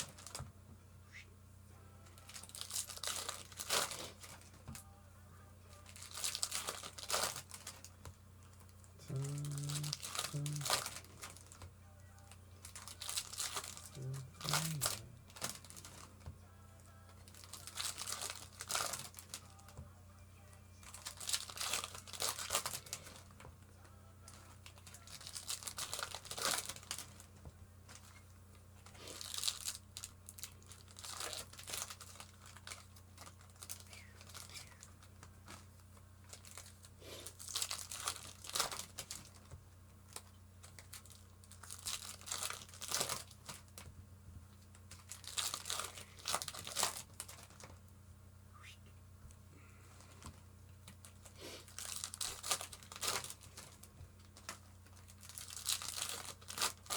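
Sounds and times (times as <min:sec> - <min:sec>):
foil wrappers crinkling and ripping: 0:00.0 - 0:00.5, 0:02.0 - 0:04.9, 0:05.7 - 0:19.8, 0:20.6 - 0:43.9, 0:44.6 - 0:47.8, 0:49.9 - 0:56.9
steady low hum: 0:00.0 - 0:56.9.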